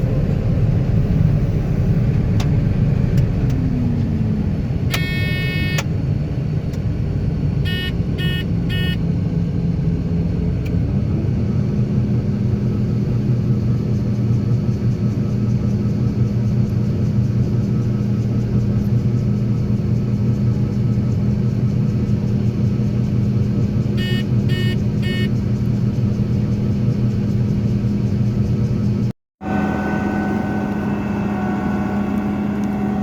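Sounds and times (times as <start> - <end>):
vehicle engine running: 0.0 - 33.0
long electronic beep: 4.9 - 5.8, 7.6 - 9.0, 24.0 - 25.3
short beeps: 4.9 - 5.8, 7.7 - 9.0, 24.0 - 25.3.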